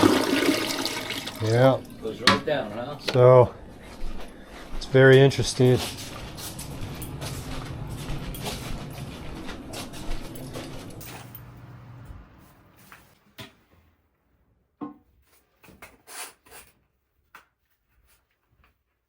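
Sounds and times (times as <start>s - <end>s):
toilet water running: 0.0s - 2.1s.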